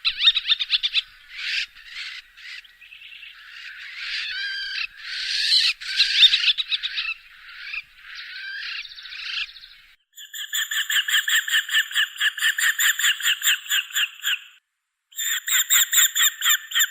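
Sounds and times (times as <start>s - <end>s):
hawk calling: 0.0s - 10.0s
repeated bird call notes: 0.0s - 16.9s.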